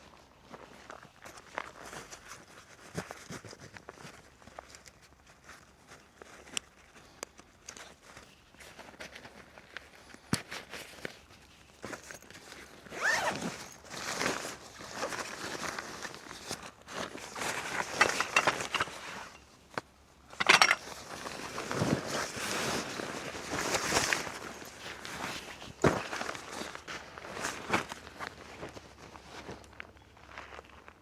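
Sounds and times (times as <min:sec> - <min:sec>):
rustling and scraping of gear: 0:00.0 - 0:31.0.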